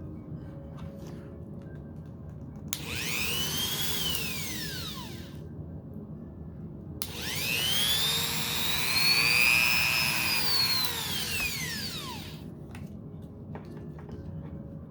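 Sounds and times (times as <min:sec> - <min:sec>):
rotary tool motor whining: 0:02.8 - 0:05.4, 0:07.0 - 0:12.4.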